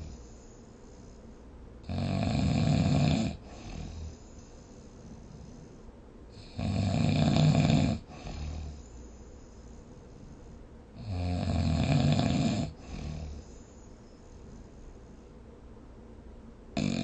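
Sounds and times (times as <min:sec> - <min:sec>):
soft breathing: 0:00.0 - 0:01.7, 0:03.3 - 0:06.6, 0:08.0 - 0:11.1, 0:12.6 - 0:15.7
person snoring: 0:01.8 - 0:05.8, 0:06.4 - 0:09.1, 0:11.0 - 0:13.7, 0:16.8 - 0:17.0.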